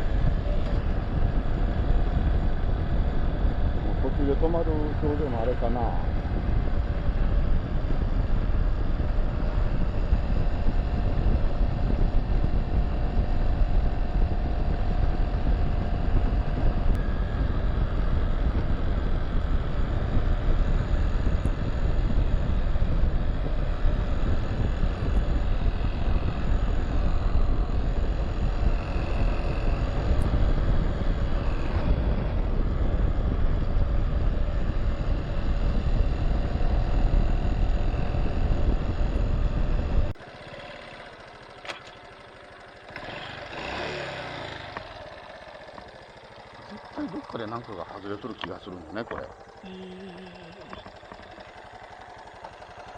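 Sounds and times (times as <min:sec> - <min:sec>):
wind on microphone: 0:00.0 - 0:40.2
motorcycle engine running: 0:00.0 - 0:52.9.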